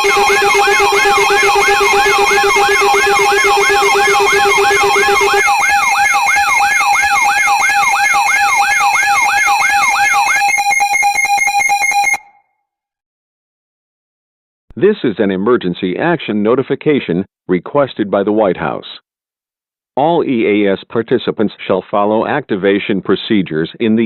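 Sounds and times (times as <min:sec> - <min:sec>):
steady alert tone: 0:00.0 - 0:12.3
rising and falling siren wail: 0:00.0 - 0:12.4.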